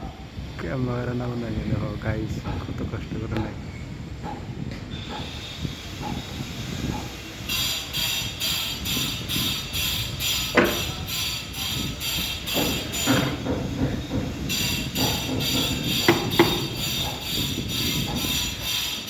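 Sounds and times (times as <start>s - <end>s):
sharp knocks: 8.9s - 18.9s.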